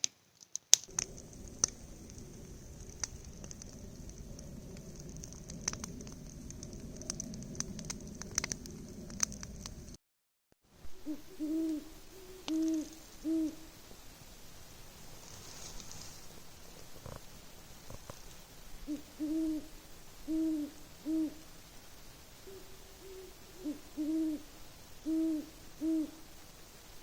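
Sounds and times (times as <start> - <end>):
campfire crackling: 0.0 - 10.0, 10.7 - 27.0
owl hooting: 10.9 - 13.7, 18.8 - 21.5, 22.4 - 26.3.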